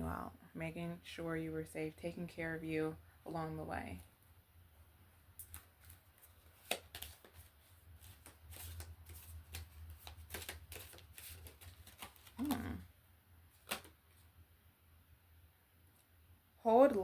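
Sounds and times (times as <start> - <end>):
cards being shuffled: 5.4 - 12.8, 13.5 - 14.2.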